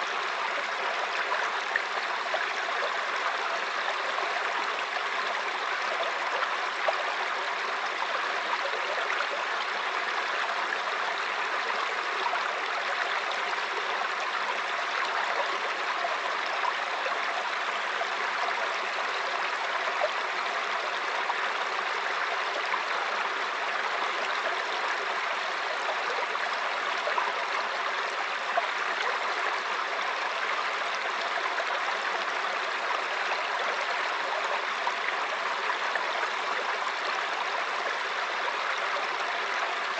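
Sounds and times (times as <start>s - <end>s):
river water flowing and babbling: 0.0s - 39.9s.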